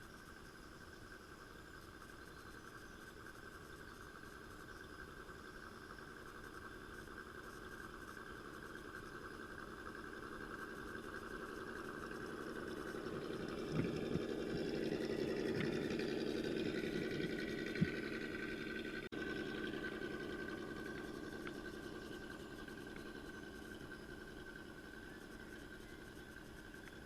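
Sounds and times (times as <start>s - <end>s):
electric motor and gearbox whining: 11.8s - 27.0s.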